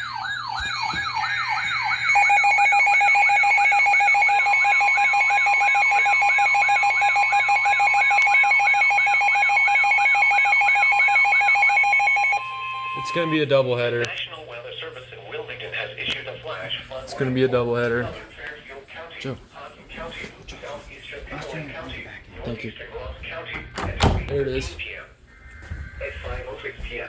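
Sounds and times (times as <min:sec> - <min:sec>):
steady warning alarm tone: 0:00.0 - 0:16.0, 0:22.6 - 0:27.0.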